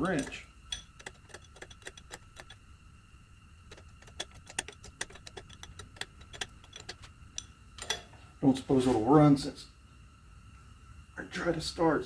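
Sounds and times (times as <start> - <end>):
wrench metallic clicks: 0.0 - 2.6, 3.6 - 8.1.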